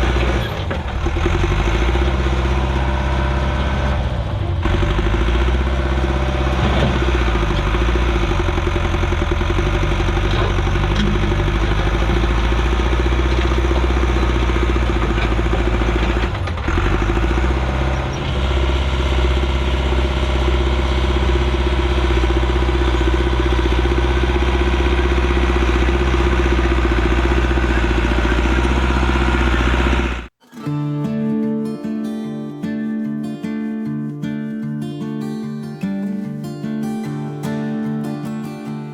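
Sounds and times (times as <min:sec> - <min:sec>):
track loader engine running: 0:00.0 - 0:30.7.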